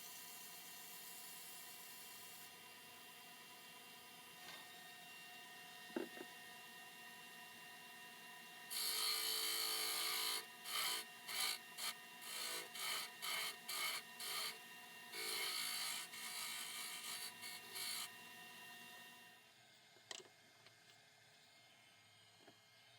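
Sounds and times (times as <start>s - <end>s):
lathe tool rasping on workpiece: 8.7s - 18.2s
lathe motor humming: 8.7s - 19.2s.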